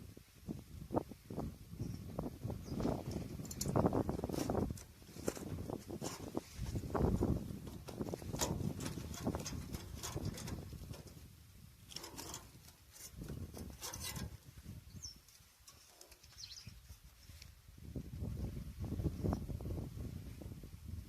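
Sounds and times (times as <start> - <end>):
hand tools clicking and scraping: 3.0 - 14.6, 15.2 - 16.6.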